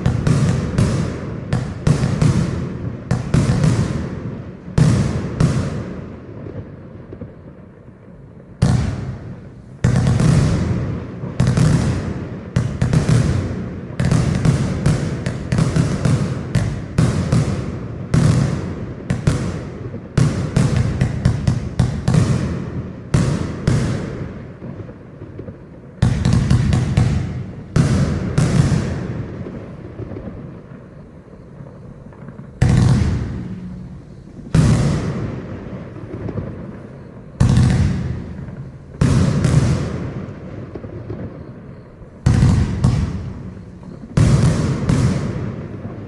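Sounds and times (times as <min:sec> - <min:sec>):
firework shots with rumbling decay: 0:00.0 - 0:46.0.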